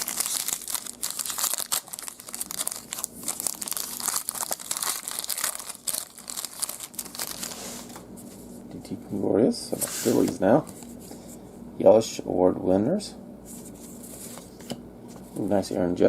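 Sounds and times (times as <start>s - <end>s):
wrapper tearing and crinkling: 0.0s - 7.7s.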